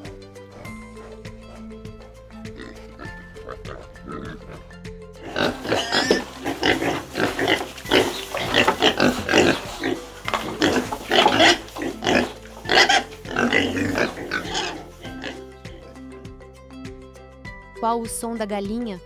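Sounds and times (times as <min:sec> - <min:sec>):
pig grunting: 0:02.4 - 0:16.0.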